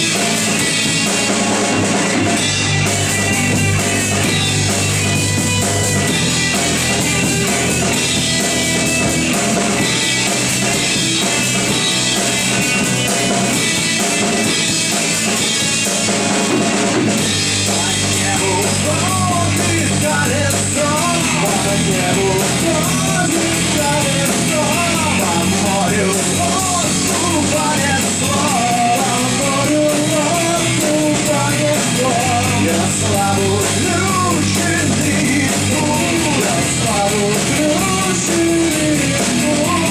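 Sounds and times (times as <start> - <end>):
lead melody with bending notes: 0.0 - 18.2
bass guitar: 0.0 - 39.9
drum kit: 0.0 - 39.9
electric guitar: 0.0 - 39.9.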